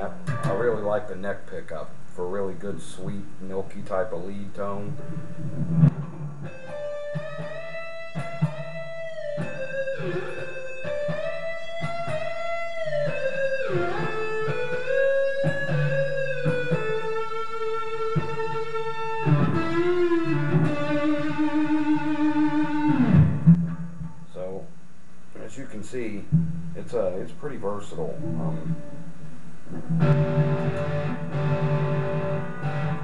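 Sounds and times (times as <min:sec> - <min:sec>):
electric guitar lead line: 0:00.0 - 0:01.0, 0:04.6 - 0:24.7, 0:27.9 - 0:33.0.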